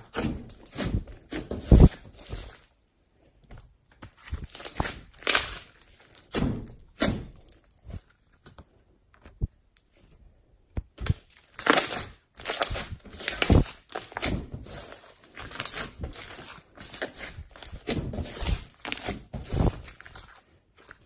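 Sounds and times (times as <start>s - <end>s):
slime squeezed and stretched: 4.4s - 8.1s, 11.0s - 21.0s.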